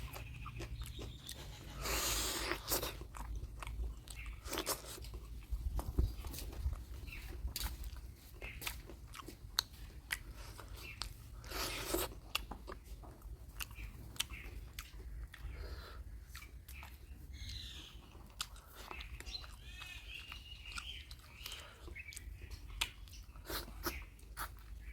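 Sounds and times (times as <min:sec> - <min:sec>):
chewing and biting food: 0:00.0 - 0:24.9.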